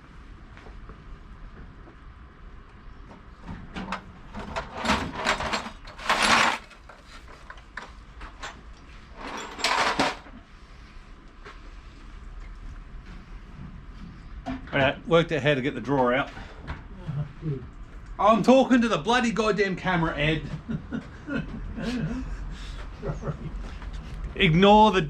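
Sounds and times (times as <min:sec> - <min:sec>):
drawer clicks and clunks: 0:03.5 - 0:06.9, 0:09.2 - 0:10.3
drawer sliding rattle: 0:03.9 - 0:06.9, 0:09.2 - 0:10.3.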